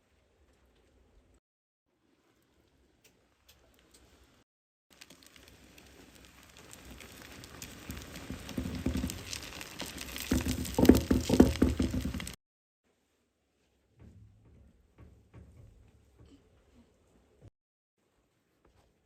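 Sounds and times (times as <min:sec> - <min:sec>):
food sizzling in hot oil: 0:04.9 - 0:12.4.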